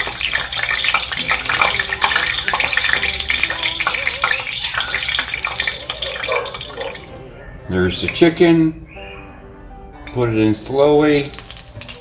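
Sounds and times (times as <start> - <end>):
hot oil sizzling and popping: 0.0 - 7.2, 10.0 - 12.0.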